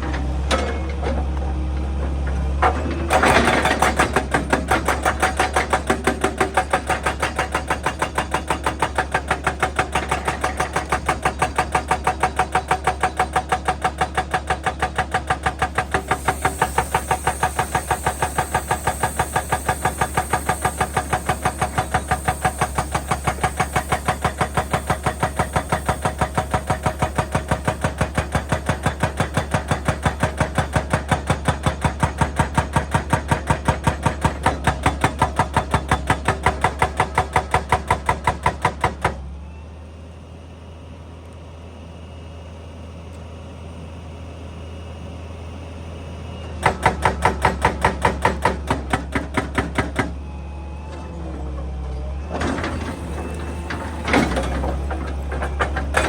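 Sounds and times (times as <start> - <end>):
hydraulic breaker hammering rock: 2.6 - 39.3, 46.5 - 50.2, 52.3 - 56.0
diesel engine running: 50.3 - 56.0.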